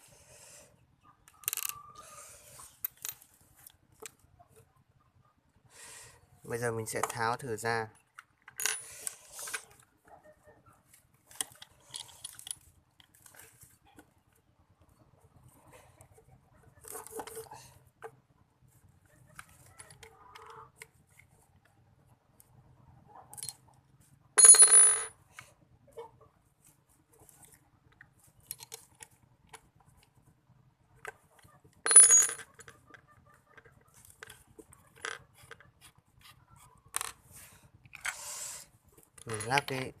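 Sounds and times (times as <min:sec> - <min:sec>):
small parts clicking and tapping: 0:01.3 - 0:01.8, 0:11.3 - 0:14.1, 0:23.3 - 0:23.6, 0:27.2 - 0:30.2, 0:31.0 - 0:36.0, 0:39.0 - 0:39.9.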